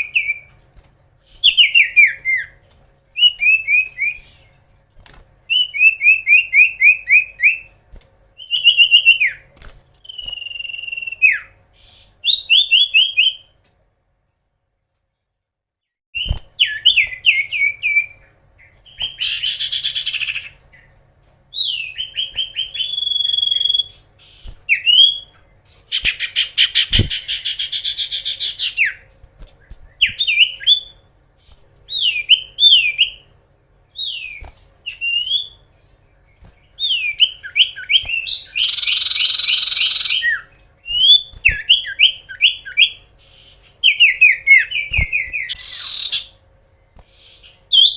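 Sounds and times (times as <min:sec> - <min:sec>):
bird whistling repeated notes: 0:10.0 - 0:11.6, 0:21.6 - 0:25.3, 0:36.8 - 0:43.0, 0:43.8 - 0:46.3
harsh buzzy bird chatter: 0:16.2 - 0:47.9.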